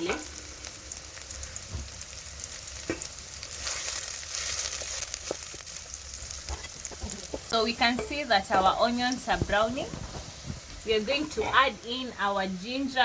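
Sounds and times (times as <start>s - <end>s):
onions sizzling in oil: 0.0s - 13.0s
spoon knocking against pot: 6.9s - 8.7s.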